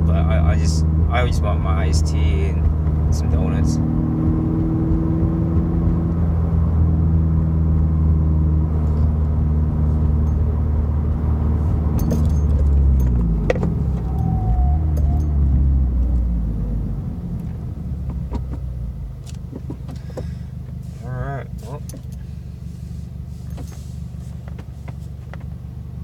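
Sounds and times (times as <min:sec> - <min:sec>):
car engine droning: 0:00.0 - 0:26.0
sharp clicks and rattles: 0:11.9 - 0:14.2.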